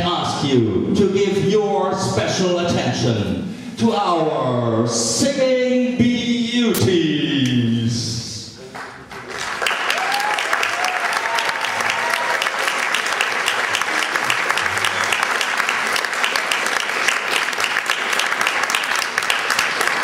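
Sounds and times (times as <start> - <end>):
audience applauding: 8.7 - 20.0.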